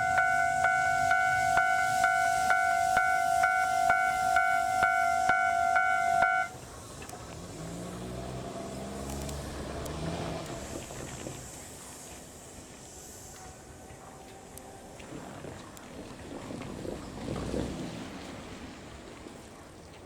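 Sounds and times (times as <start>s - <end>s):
level-crossing bell ringing: 0.0s - 6.6s.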